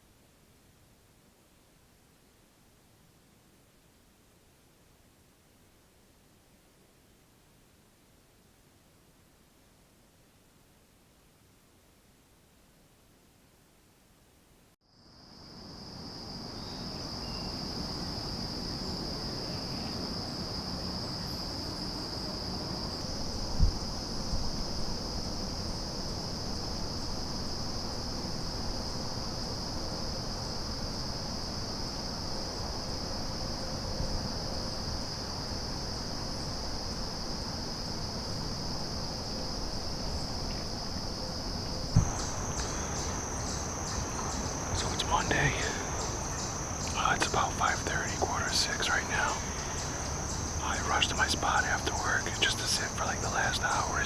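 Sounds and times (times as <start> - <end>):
insects trilling: 14.8 - 54.0
short thump: 42.0 - 42.8.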